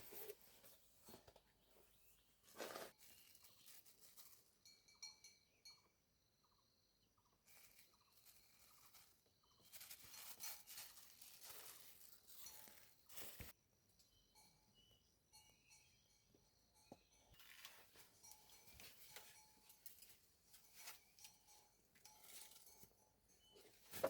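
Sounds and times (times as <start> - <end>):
faint high chirps: 3.0 - 19.8
faint rustling: 7.5 - 13.5.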